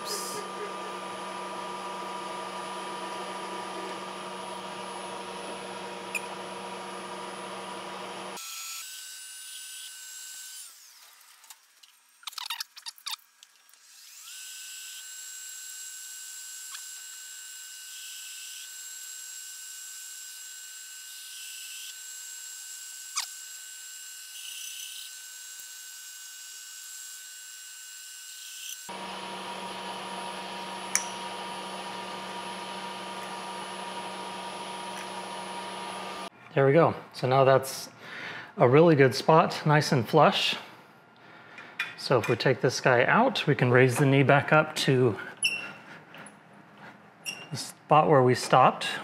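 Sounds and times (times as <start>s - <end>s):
milling machine whine: 0.0s - 8.4s, 28.8s - 36.3s.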